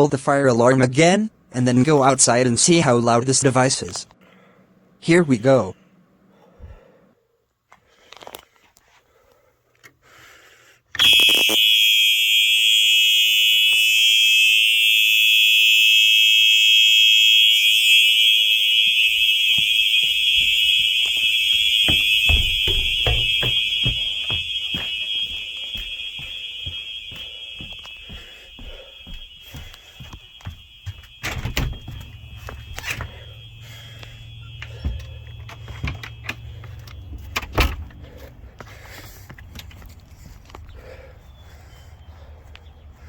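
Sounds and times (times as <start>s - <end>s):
loud steady alarm horn tone: 11.0s - 38.7s
footstep thumps: 18.4s - 40.6s.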